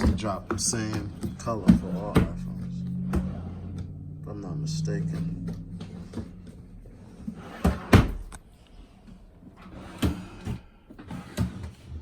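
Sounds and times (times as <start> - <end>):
boxes knocking and thumping: 0.0 - 3.5.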